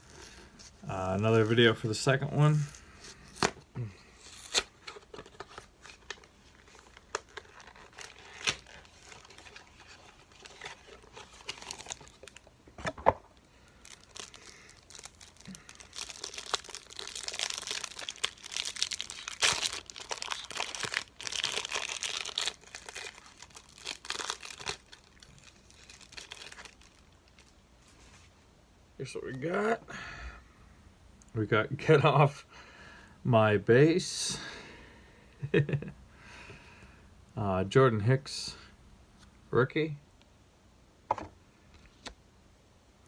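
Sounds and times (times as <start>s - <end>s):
plastic wrapping tearing: 4.2s - 12.5s, 13.7s - 27.6s.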